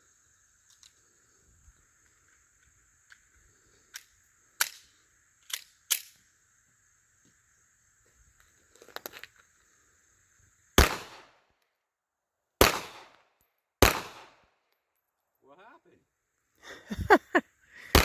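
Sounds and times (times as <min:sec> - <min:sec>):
pistol shots: 0:10.8 - 0:11.3, 0:12.6 - 0:13.2, 0:13.8 - 0:14.4.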